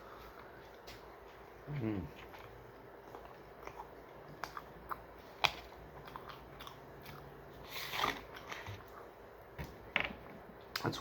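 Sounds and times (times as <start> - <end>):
chewing with mouth clicks: 1.6 - 9.1.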